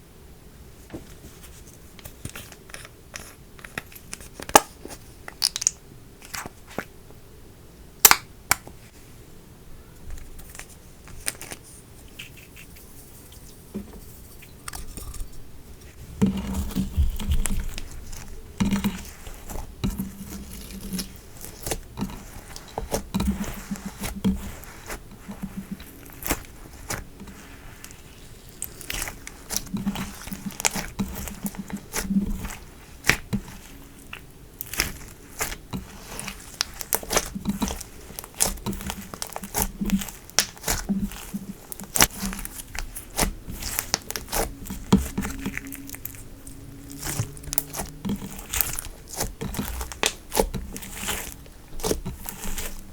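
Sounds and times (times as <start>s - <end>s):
slime crackling and popping: 4.1s - 6.5s, 8.0s - 8.7s, 16.6s - 52.9s.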